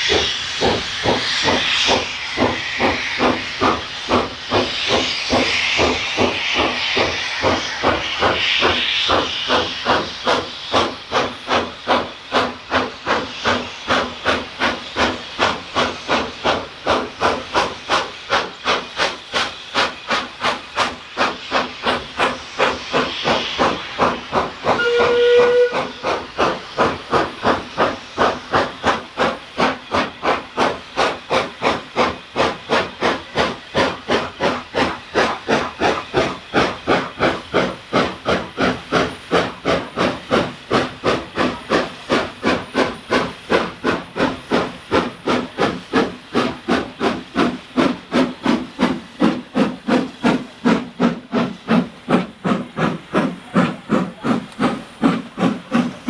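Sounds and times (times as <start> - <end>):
steam locomotive chuffing: 0.0 - 56.0
steam whistle blast: 24.7 - 26.1.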